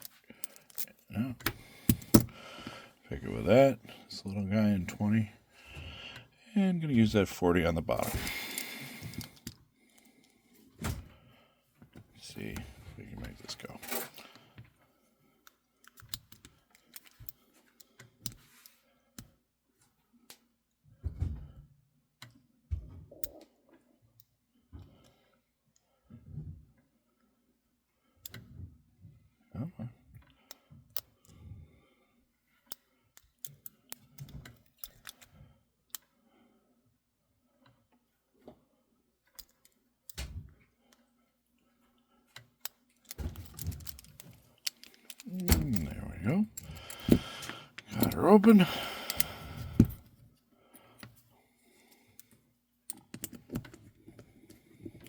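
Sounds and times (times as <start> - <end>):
lock pick clicks and taps: 0.0 - 2.4, 15.5 - 18.4, 42.4 - 45.9, 46.5 - 50.1, 52.2 - 54.3
padlock handling rattle: 0.0 - 2.4, 7.9 - 10.2, 15.5 - 18.7, 32.7 - 35.4, 42.6 - 50.1, 52.0 - 55.0.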